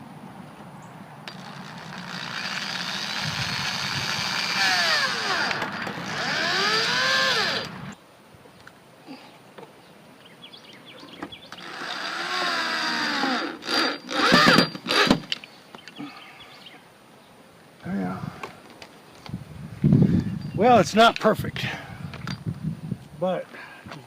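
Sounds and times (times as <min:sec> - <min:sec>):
power drill driving screws: 0:01.3 - 0:08.0, 0:11.6 - 0:15.2.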